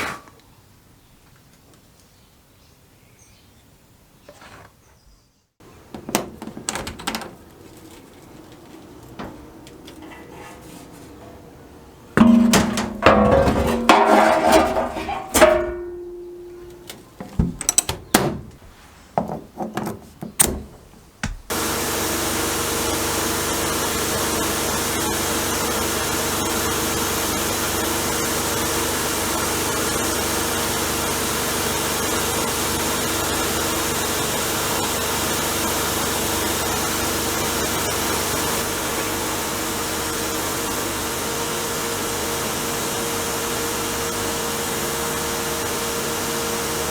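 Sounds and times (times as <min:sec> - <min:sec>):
metal can clanking: 0:12.2 - 0:17.7
power tool humming: 0:21.5 - 0:46.9.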